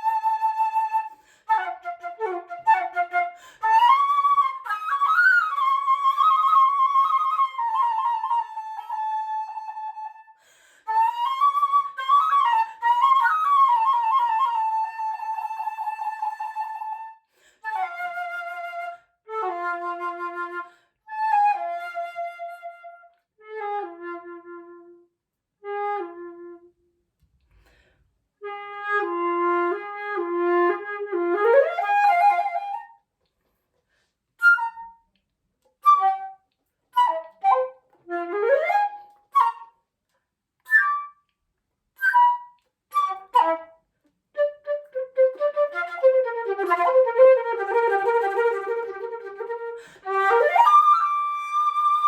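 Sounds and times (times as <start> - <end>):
solo flute playing: 0.0 - 26.8, 28.4 - 33.1, 34.4 - 35.1, 35.8 - 39.8, 40.6 - 41.4, 42.0 - 52.0.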